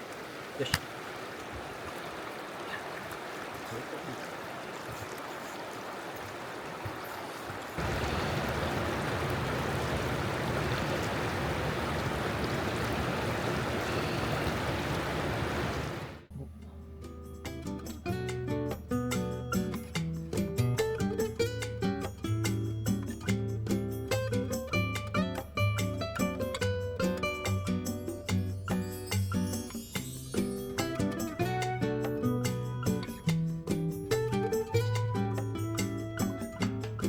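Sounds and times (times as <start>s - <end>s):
river water rushing: 0.0s - 16.3s
guitar music: 16.6s - 37.0s.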